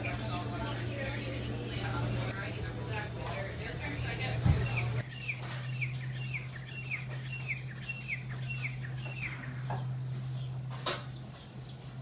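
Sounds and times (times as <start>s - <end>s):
steady low hum: 0.0s - 12.0s
small bird chirping: 4.6s - 12.0s.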